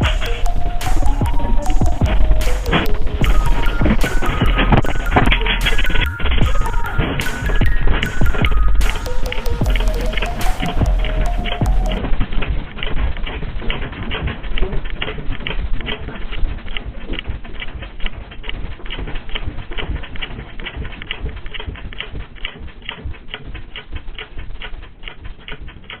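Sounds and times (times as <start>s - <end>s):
low rumble: 0.0s - 13.6s.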